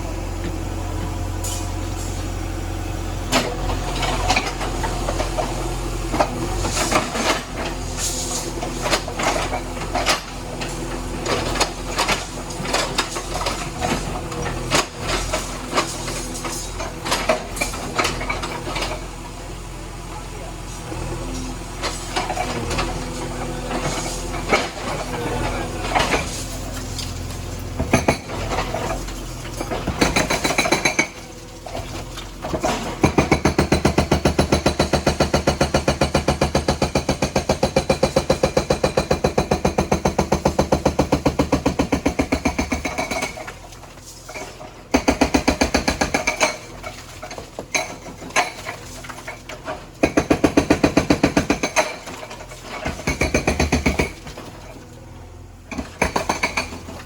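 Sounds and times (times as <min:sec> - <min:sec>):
diesel engine running: 0:00.0 - 0:42.4
hydraulic breaker hammering: 0:29.6 - 0:31.3, 0:32.4 - 0:43.4.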